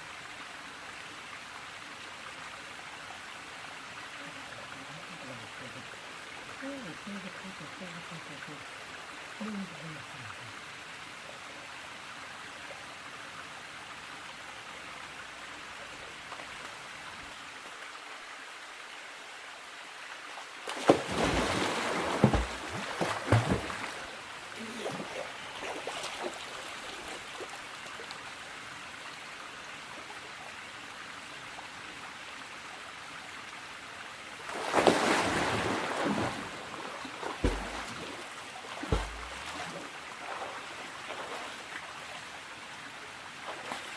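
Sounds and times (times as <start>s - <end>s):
stream water running: 0.0s - 43.9s
water splashing: 20.6s - 27.6s, 34.4s - 41.8s, 43.4s - 43.9s.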